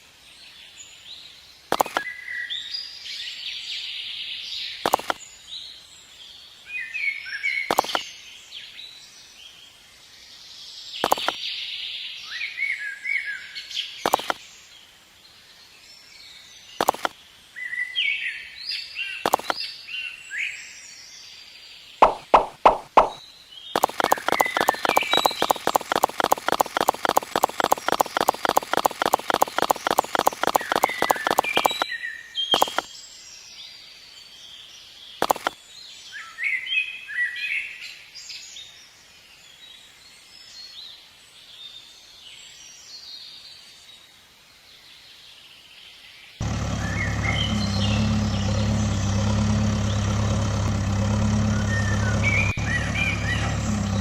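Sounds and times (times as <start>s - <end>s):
birds chirping: 1.6s - 3.4s, 4.6s - 6.3s, 7.0s - 8.8s, 11.0s - 11.4s, 14.0s - 14.6s, 16.8s - 17.2s, 19.0s - 20.1s, 22.0s - 33.0s, 35.2s - 35.6s, 46.4s - 54.0s
engine-like hum: 1.7s - 2.0s, 4.9s - 5.2s, 7.7s - 8.0s, 11.0s - 11.4s, 14.1s - 14.4s, 16.8s - 17.2s, 19.3s - 19.6s, 22.0s - 23.2s, 23.8s - 31.8s, 32.5s - 32.9s, 35.2s - 35.6s, 46.4s - 54.0s
fast even clicking: 1.7s - 2.0s, 4.9s - 5.2s, 7.7s - 8.0s, 11.0s - 11.4s, 14.1s - 14.4s, 16.8s - 17.2s, 19.3s - 19.6s, 22.0s - 23.2s, 23.8s - 31.8s, 32.6s - 32.9s, 35.2s - 35.6s.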